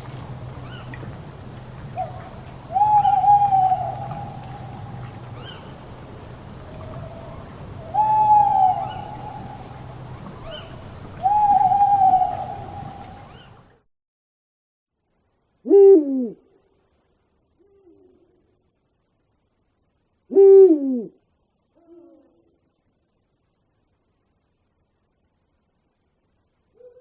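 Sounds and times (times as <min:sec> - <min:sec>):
faint low hum: 0:00.0 - 0:13.8, 0:15.0 - 0:27.0
owl hooting: 0:02.0 - 0:05.8, 0:06.7 - 0:13.5, 0:15.7 - 0:16.5, 0:20.3 - 0:21.2.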